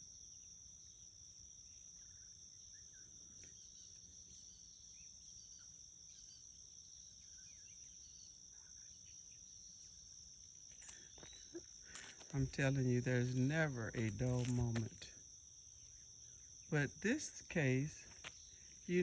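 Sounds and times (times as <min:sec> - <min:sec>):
faint bird chirps: 0:00.0 - 0:10.2, 0:10.8 - 0:12.3.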